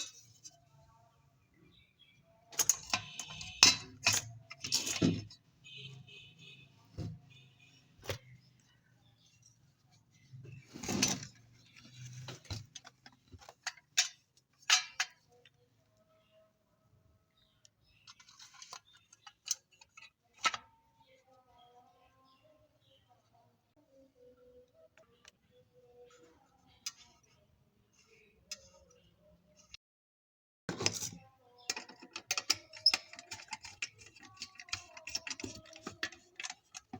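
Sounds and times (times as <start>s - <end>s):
clicks and knocks of hard parts: 2.5s - 5.4s, 30.7s - 36.9s.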